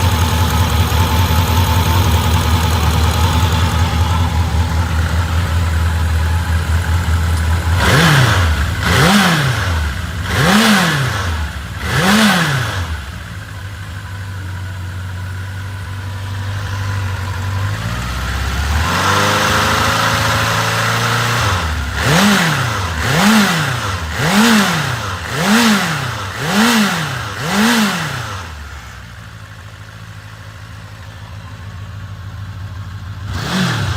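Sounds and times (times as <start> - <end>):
motorcycle engine revving: 0.0 - 33.9.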